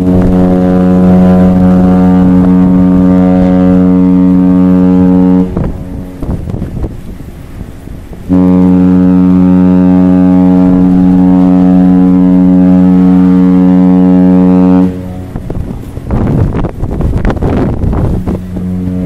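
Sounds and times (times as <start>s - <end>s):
ship's horn blast: 0.0s - 19.0s.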